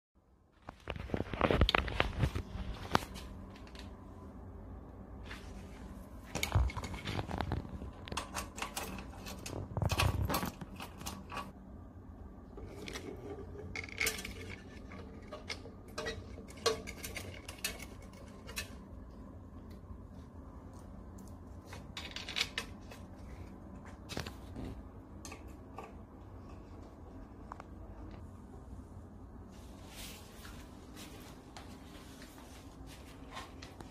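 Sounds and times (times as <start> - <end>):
metal parts clicking and scraping: 6.3 - 11.5, 12.6 - 18.9, 21.6 - 23.1.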